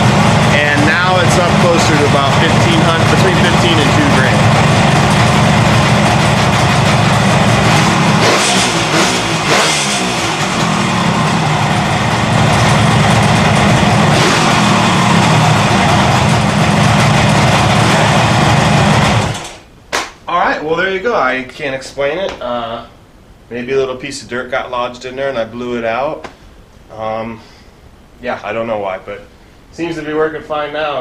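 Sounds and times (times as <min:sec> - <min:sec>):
two-stroke motorcycle engine idling: 0:00.0 - 0:08.7, 0:09.9 - 0:19.4.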